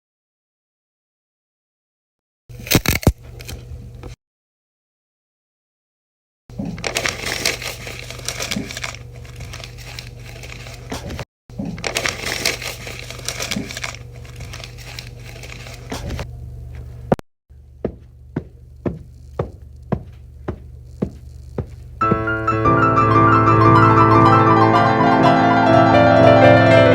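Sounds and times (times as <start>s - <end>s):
crunching and crinkling: 6.5s - 17.2s, 18.0s - 22.0s.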